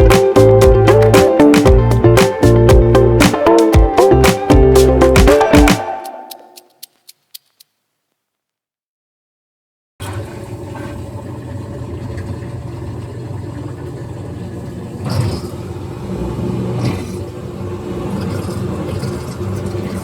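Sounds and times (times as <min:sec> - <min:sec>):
washing machine running: 0:10.0 - 0:20.0.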